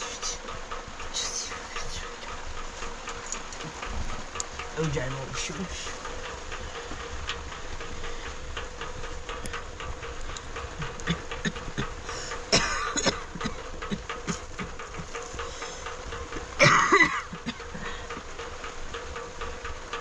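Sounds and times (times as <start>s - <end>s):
light ticks and knocks: 0.0s - 20.0s
low hum: 0.0s - 20.0s
person coughing: 11.0s - 14.6s, 16.6s - 18.0s.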